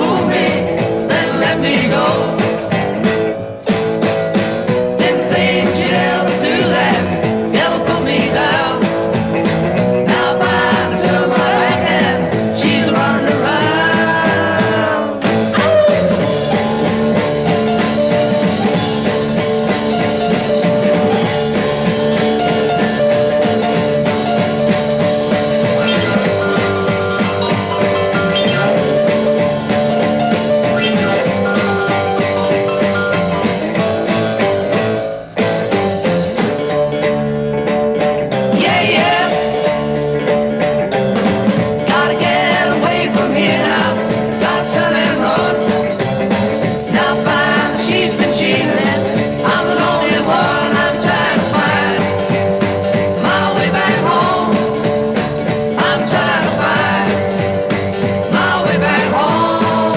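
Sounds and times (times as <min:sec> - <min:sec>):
person singing: 0:00.0 - 0:02.8, 0:04.8 - 0:09.2, 0:09.8 - 0:19.1, 0:41.8 - 0:46.0, 0:46.8 - 0:57.6, 0:58.2 - 0:59.9
rock band playing: 0:00.0 - 0:59.9.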